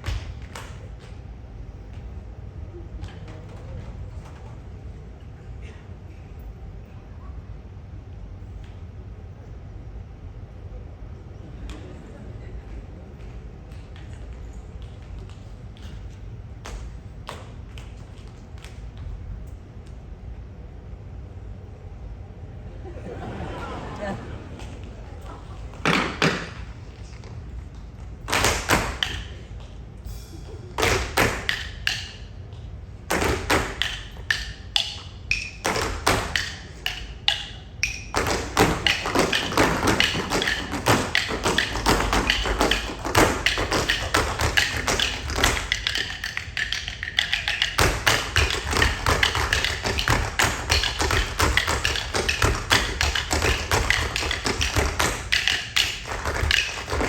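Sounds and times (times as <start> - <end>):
tap shoes striking stage: 0.0 - 2.2, 13.1 - 19.2, 25.6 - 29.8, 30.8 - 57.0
heavy tap thumps: 33.1 - 57.0.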